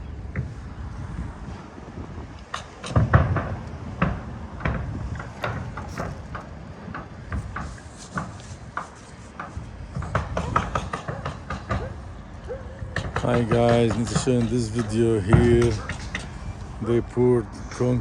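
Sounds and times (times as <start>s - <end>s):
irregular clicks and knocks: 2.4s - 12.0s, 12.9s - 16.7s.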